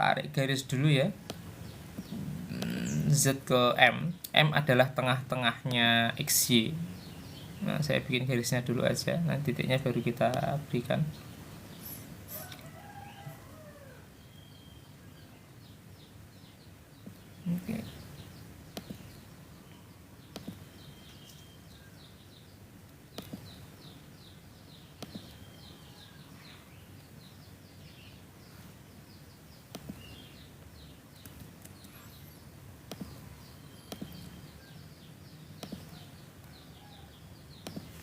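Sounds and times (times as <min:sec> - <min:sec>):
faint birdsong: 0:00.0 - 0:38.0
low room noise: 0:00.0 - 0:38.0
sharp taps: 0:18.7 - 0:19.1, 0:20.3 - 0:20.6, 0:23.2 - 0:23.5, 0:25.0 - 0:25.4, 0:29.7 - 0:30.1, 0:32.9 - 0:33.2, 0:33.8 - 0:34.3, 0:35.6 - 0:35.9, 0:37.6 - 0:38.0.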